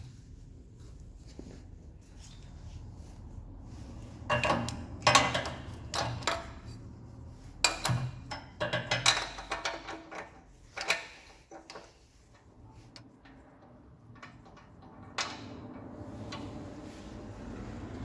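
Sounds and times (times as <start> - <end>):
engine turning over: 14.8 - 18.0.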